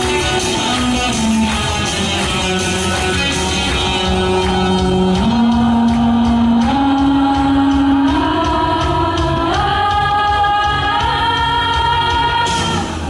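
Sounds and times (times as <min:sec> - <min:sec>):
live pop band: 0:00.0 - 0:13.0
person singing long notes: 0:04.0 - 0:12.9.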